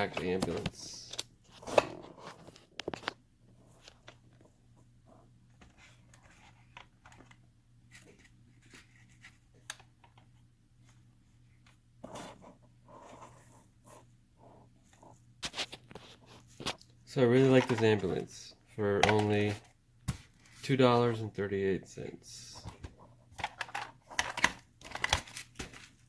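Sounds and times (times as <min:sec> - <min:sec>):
low steady hum: 0:00.0 - 0:26.0.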